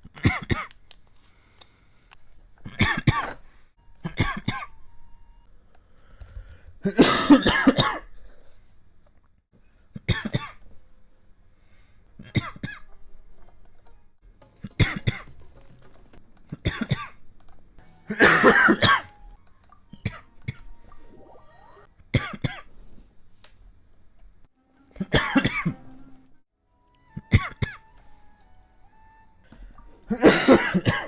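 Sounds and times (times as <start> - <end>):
person coughing: 0.2 - 0.8, 2.7 - 3.4, 4.0 - 4.8, 6.8 - 8.1, 10.0 - 10.6, 12.2 - 12.9, 14.6 - 15.3, 16.5 - 17.2, 18.1 - 19.1, 22.2 - 22.7, 25.0 - 25.8, 27.2 - 27.8, 30.1 - 31.0.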